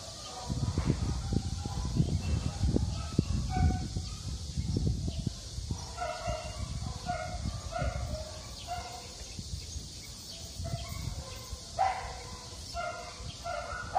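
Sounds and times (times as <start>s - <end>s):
dogs barking: 0.0s - 4.5s, 5.2s - 9.4s, 10.3s - 13.9s
low rumbling microphone noise: 0.0s - 12.4s.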